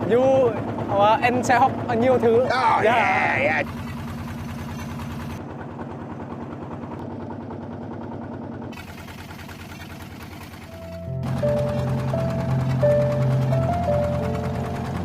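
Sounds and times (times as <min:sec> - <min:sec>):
small boat engine running: 0:00.0 - 0:15.0
music: 0:10.7 - 0:15.0.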